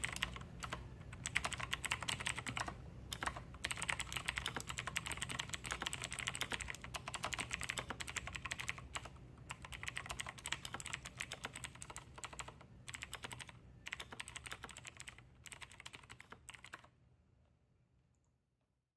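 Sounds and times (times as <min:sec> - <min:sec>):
mechanical keyboard typing: 0:00.0 - 0:16.9.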